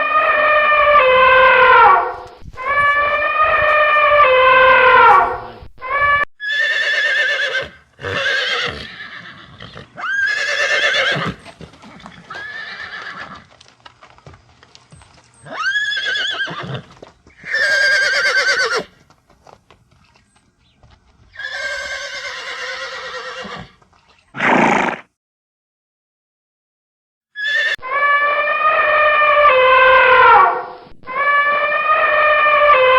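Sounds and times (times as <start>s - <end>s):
horses whinnying: 0.0s - 13.6s, 15.4s - 19.0s, 21.3s - 25.1s, 27.4s - 32.9s.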